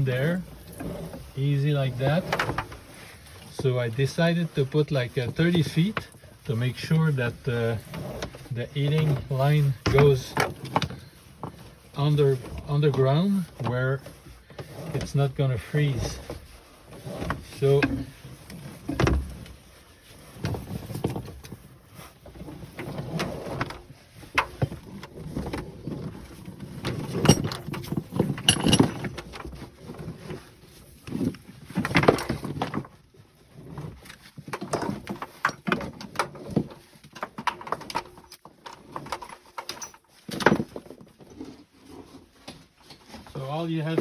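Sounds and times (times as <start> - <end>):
scrapes and knocks: 0.0 - 44.0.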